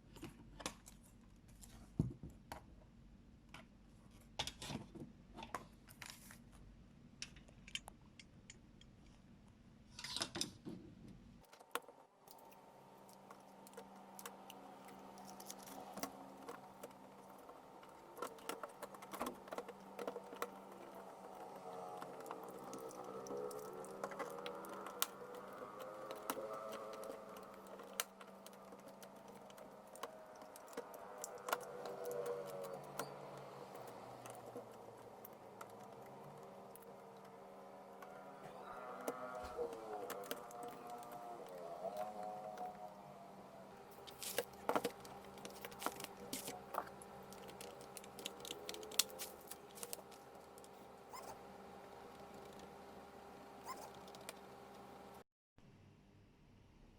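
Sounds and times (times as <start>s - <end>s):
laptop keyboard typing: 12.3s - 37.3s.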